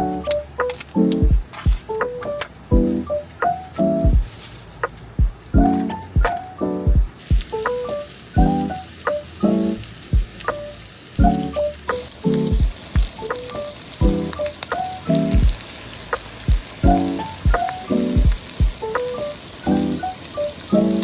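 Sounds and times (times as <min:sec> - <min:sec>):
background music with beat: 0:00.0 - 0:21.0
food sizzling in frying: 0:02.8 - 0:04.6, 0:07.1 - 0:21.0.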